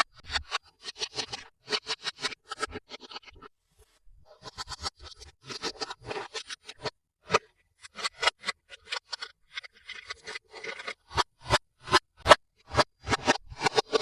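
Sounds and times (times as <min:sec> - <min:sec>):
scratchy scraping: 0:04.3 - 0:14.0.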